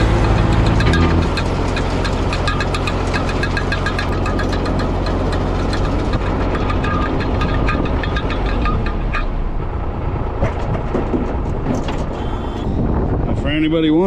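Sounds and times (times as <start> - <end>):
tractor engine running: 0.0 - 12.6
manure spreader clicking and clattering: 1.4 - 9.3.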